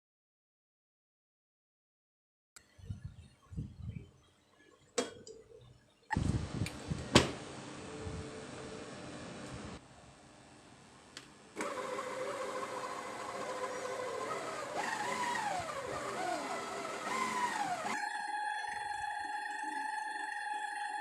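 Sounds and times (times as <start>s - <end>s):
kitchen appliance motor whine: 6.1s - 9.8s, 11.6s - 20.6s.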